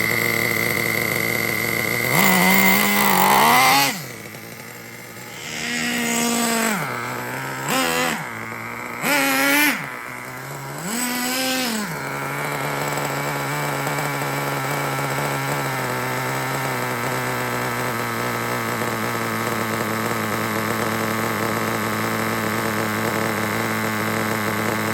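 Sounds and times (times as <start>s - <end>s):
nitro engine revving and idling: 0.0s - 24.9s.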